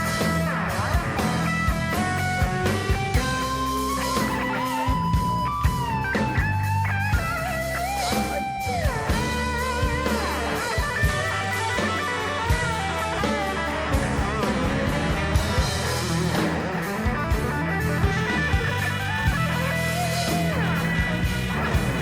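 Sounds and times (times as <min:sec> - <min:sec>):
bass guitar: 0:00.0 - 0:22.0
drums: 0:00.0 - 0:22.0
electric guitar solo: 0:00.0 - 0:22.0.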